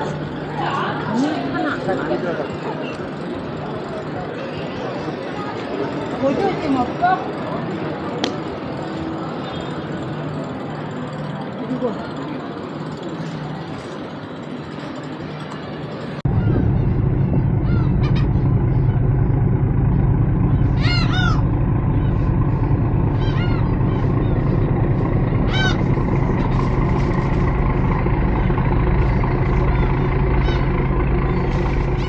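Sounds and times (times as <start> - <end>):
ferry engine drone: 0.0 - 32.0
gulls calling: 16.3 - 32.0.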